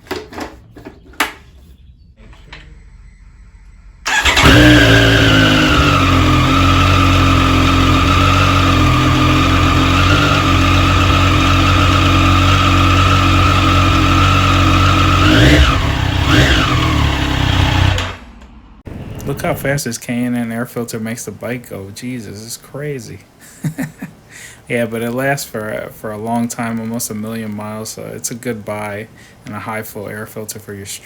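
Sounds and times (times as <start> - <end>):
engine throttle blips: 3.5 - 19.8
motorcycle engine idling: 3.8 - 18.8.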